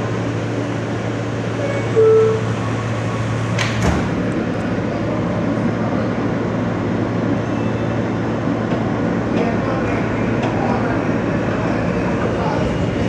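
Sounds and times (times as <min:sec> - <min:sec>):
subway car rumble: 0:00.0 - 0:13.0
door-closing chime: 0:01.7 - 0:02.5
sliding doors closing knock: 0:03.5 - 0:04.3.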